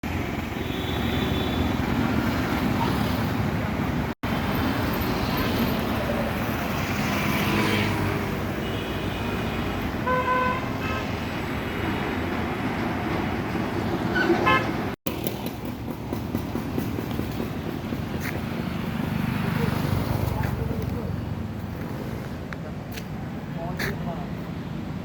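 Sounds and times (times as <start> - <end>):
road traffic: 0.0 - 25.0
vehicle horns tooting: 8.6 - 11.2, 14.2 - 14.8.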